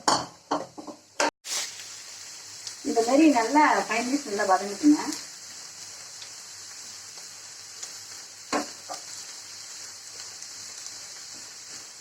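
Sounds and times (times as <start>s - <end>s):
vegetables sizzling in a frying pan: 0.0s - 12.0s.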